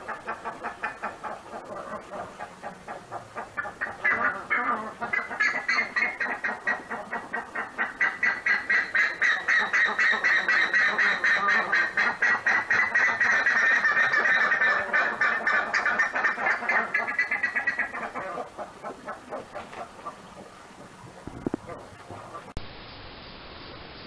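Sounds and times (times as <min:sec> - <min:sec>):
ibis calling: 0:00.0 - 0:22.6.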